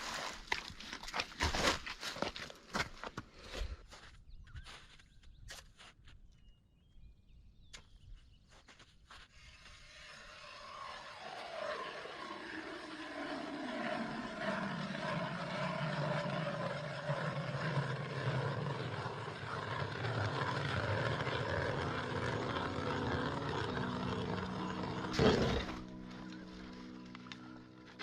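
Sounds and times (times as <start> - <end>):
engine drone: 9.4 - 28.0.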